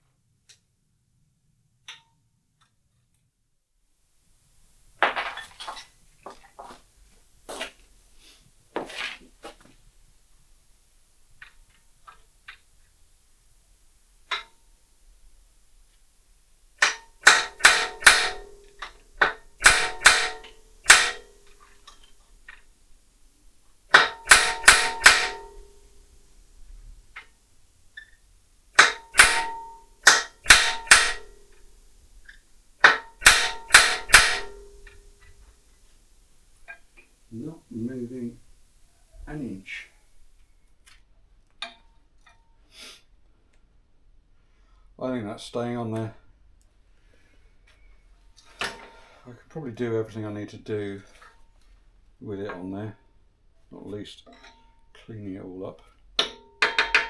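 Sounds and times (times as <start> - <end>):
hammer striking steel: 16.8 - 22.1, 23.9 - 26.2, 28.8 - 35.3.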